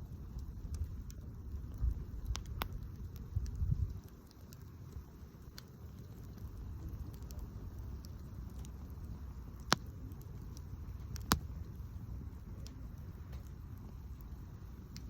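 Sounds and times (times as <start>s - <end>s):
low steady rumble: 0.0s - 15.0s
wood fire crackling: 0.0s - 15.0s.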